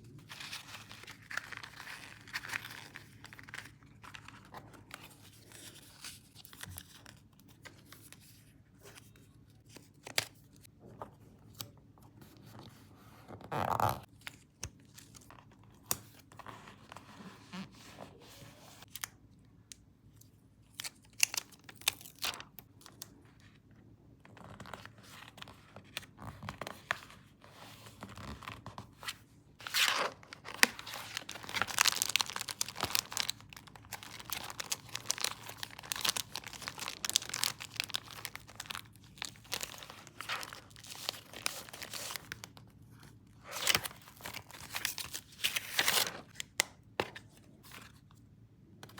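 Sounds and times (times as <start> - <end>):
paper tearing and crinkling: 29.6 - 42.3.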